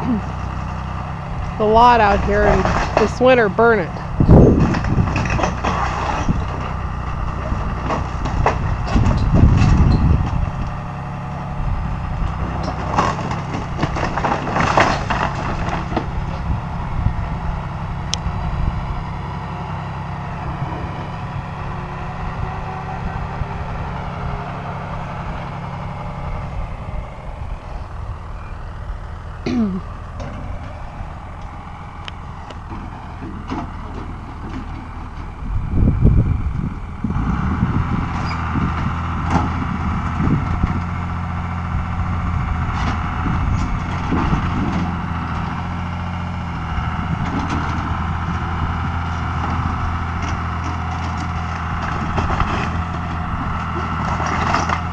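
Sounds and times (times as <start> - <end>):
vehicle engine running: 0.0 - 54.9
wooden framing cracking and splintering: 12.6 - 16.1.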